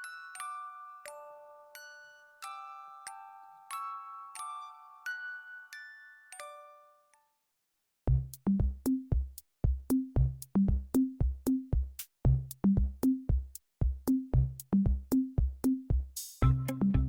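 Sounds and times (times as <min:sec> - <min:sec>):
electronic music with drum machine: 0:08.4 - 0:17.0.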